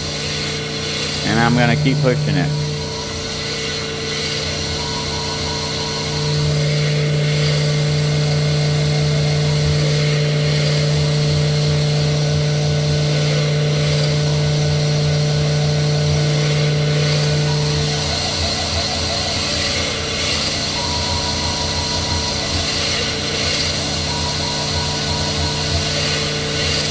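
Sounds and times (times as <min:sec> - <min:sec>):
honing machine hum: 0:00.8 - 0:11.4
high machine tone: 0:01.0 - 0:11.2.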